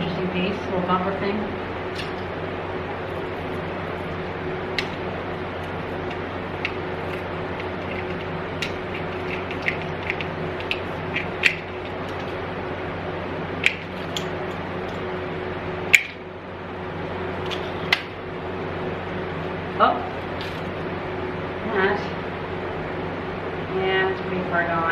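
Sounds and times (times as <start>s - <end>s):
steady low hum: 0.0s - 24.9s.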